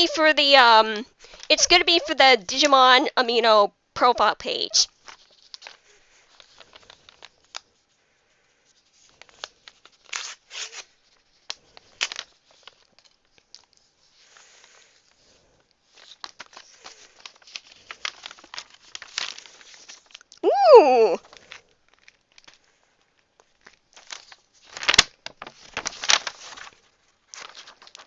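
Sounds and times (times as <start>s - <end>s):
packaging rustling and crinkling: 4.9s - 7.9s, 8.6s - 20.4s, 21.2s - 28.0s
small crackles: 4.9s - 20.4s, 21.2s - 28.0s
packaging tearing: 9.8s - 13.1s, 24.0s - 28.0s.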